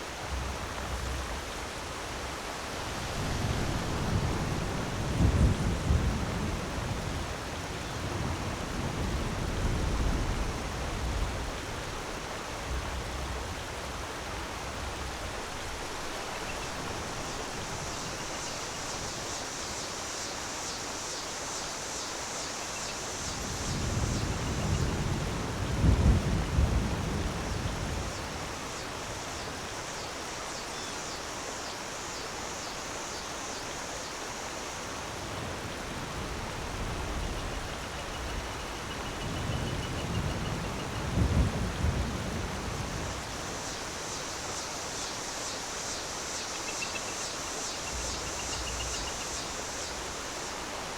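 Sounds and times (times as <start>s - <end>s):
deep rumbling: 0.2s - 2.4s
high hiss: 14.4s - 25.1s, 42.6s - 50.9s.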